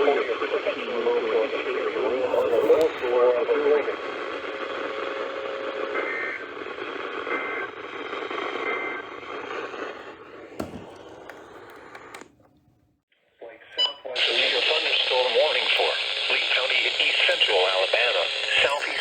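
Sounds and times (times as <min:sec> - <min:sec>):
radio signal hiss: 0:00.0 - 0:12.3, 0:13.4 - 0:19.0
click: 0:10.6 - 0:12.7.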